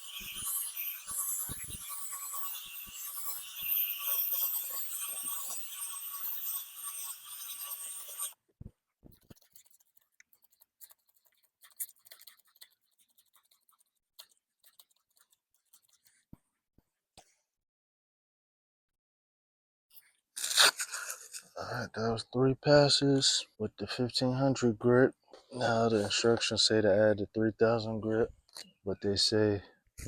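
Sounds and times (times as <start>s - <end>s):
drill sanding with whine: 0.0s - 8.4s.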